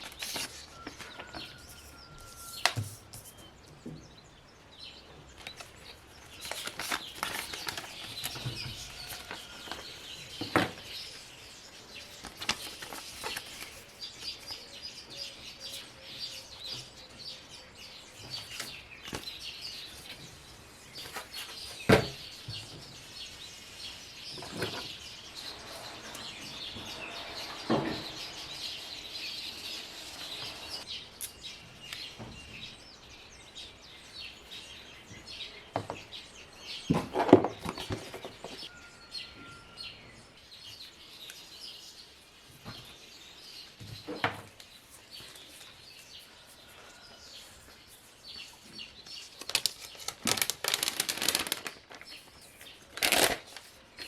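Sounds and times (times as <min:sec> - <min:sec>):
birds chirping: 0:00.0 - 0:54.0.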